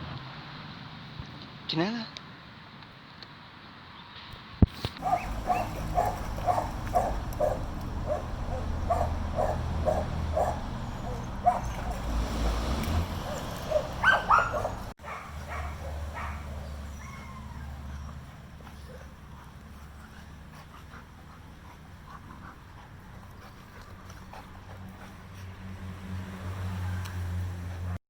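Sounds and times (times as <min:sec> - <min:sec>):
dog barking: 0:05.0 - 0:18.1
dog yipping: 0:05.0 - 0:19.1.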